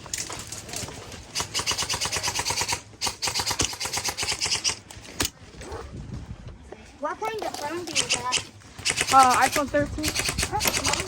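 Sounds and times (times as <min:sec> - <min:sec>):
airsoft gun automatic bursts: 0:01.3 - 0:04.8, 0:07.9 - 0:11.0.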